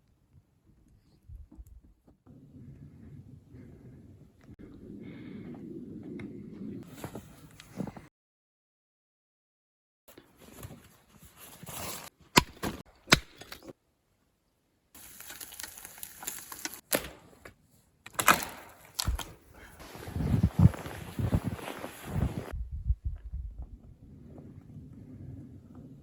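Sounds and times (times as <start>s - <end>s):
sharp knocks and cracks: 12.3s - 13.8s, 18.1s - 19.4s
crunching and rustling: 15.0s - 16.8s.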